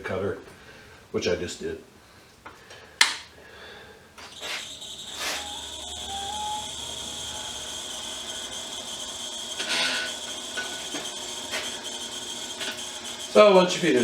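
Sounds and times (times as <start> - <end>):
wire scraping through stripper: 4.2 - 13.4
electric motor high whine: 4.2 - 14.0.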